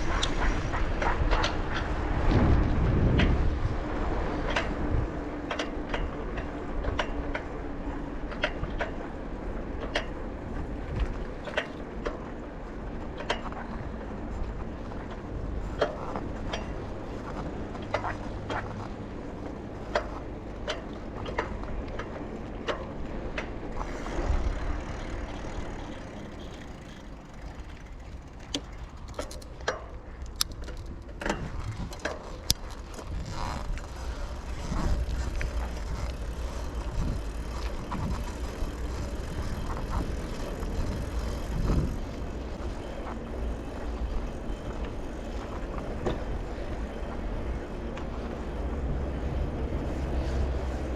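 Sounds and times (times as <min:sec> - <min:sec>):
wind on microphone: 0:00.0 - 0:07.1, 0:23.7 - 0:29.1, 0:30.4 - 0:50.9
bike clicking and rattling: 0:00.0 - 0:50.9
tyres rumbling: 0:00.0 - 0:50.9.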